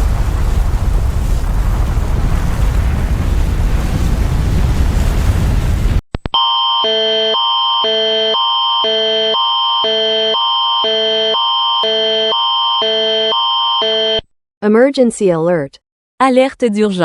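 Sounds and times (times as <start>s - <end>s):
loud even noise: 0.0s - 6.0s
emergency alert signal: 6.4s - 14.2s.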